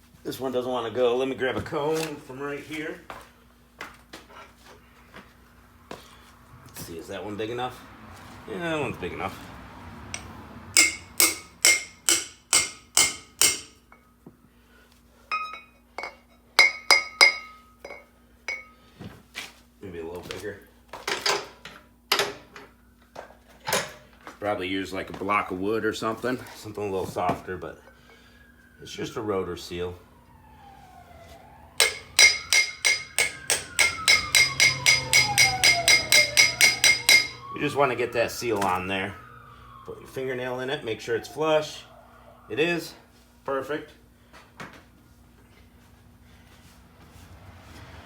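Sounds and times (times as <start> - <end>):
hammer tapping metal: 10.1 - 14.1, 15.3 - 18.7, 31.8 - 37.4.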